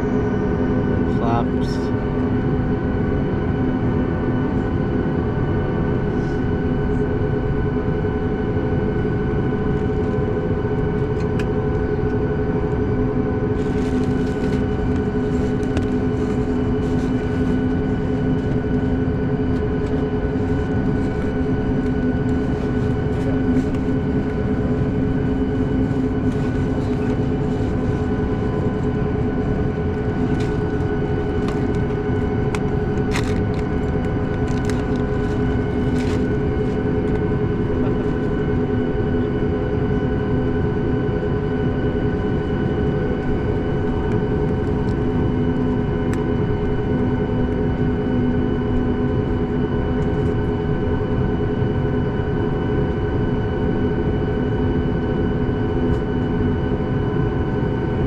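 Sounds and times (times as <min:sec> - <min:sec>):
jet cabin engine rumble: 0:00.0 - 0:58.0.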